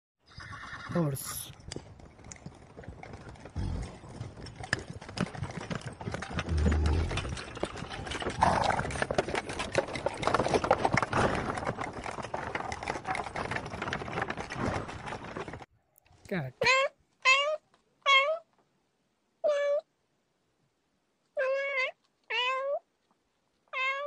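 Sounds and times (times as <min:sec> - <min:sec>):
horse hooves clopping: 0:00.3 - 0:15.7.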